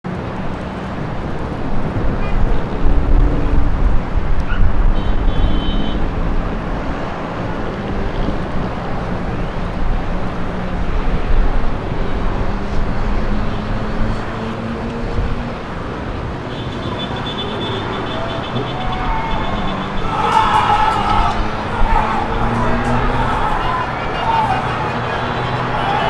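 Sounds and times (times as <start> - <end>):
street traffic: 0.0 - 26.0.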